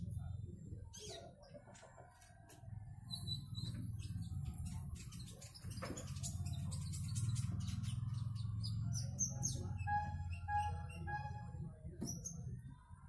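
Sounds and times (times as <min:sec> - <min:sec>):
small bird chirping: 0:03.0 - 0:11.3
loud low hum: 0:06.6 - 0:12.1.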